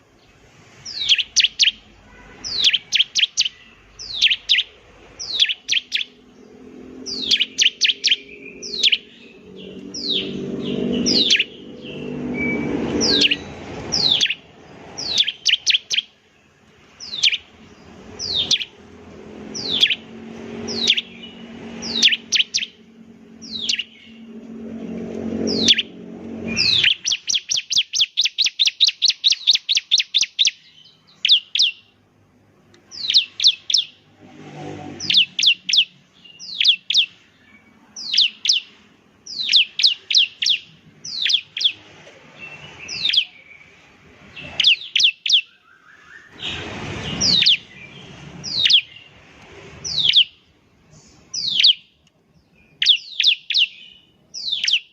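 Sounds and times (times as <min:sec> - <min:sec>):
bird chirping: 0:00.0 - 0:32.0, 0:32.7 - 0:54.9
fast bird trill: 0:00.9 - 0:16.2, 0:17.0 - 0:18.8, 0:19.4 - 0:31.9, 0:32.9 - 0:34.1, 0:34.9 - 0:37.3, 0:38.0 - 0:41.8, 0:42.5 - 0:43.5, 0:44.4 - 0:49.1, 0:49.8 - 0:50.4, 0:51.4 - 0:51.9, 0:52.7 - 0:54.9
low hum: 0:06.0 - 0:15.2, 0:16.6 - 0:27.1.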